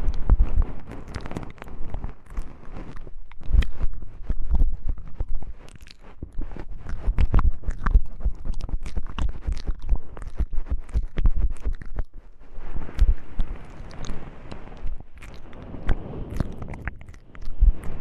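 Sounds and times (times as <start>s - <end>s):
low thumps on microphone: 17.4s - 18.0s.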